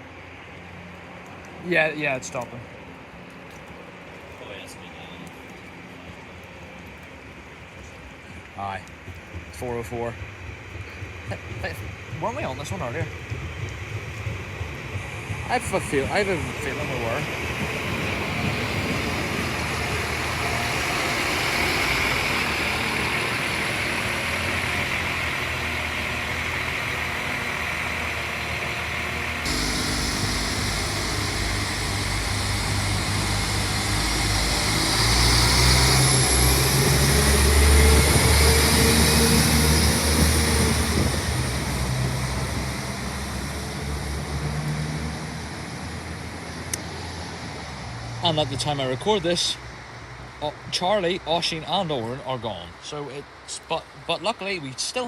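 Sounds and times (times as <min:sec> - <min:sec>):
diesel train engines running: 0:00.0 - 0:55.0.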